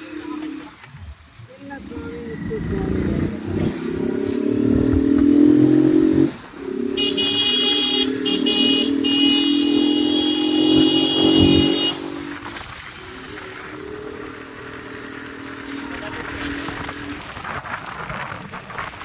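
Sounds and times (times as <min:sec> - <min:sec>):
motor vehicles running: 0:00.0 - 0:19.0
long steady pitched tones: 0:01.7 - 0:17.5
high steady tones: 0:05.7 - 0:17.2.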